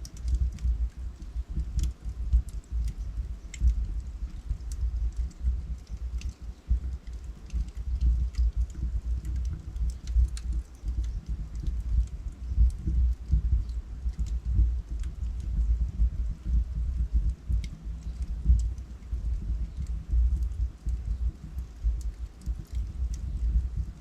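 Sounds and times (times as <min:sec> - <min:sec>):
wood fire crackling: 0:00.0 - 0:24.0
sharp pops from burning logs: 0:00.1 - 0:15.6.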